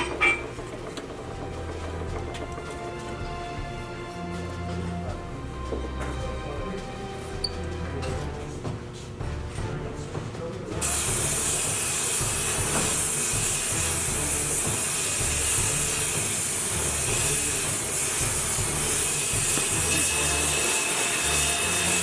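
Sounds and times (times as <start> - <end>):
background music: 0.0 - 22.0
gas torch hissing: 10.8 - 22.0.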